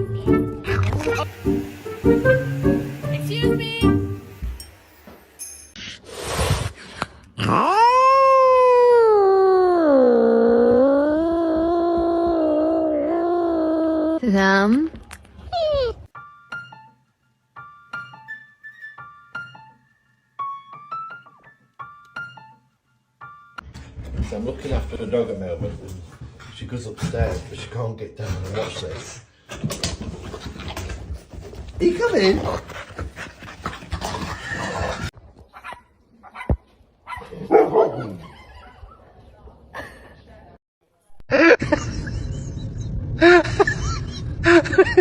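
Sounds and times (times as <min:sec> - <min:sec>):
slow piano melody: 0:00.0 - 0:04.4, 0:16.2 - 0:23.6
dog barking: 0:35.6 - 0:38.8.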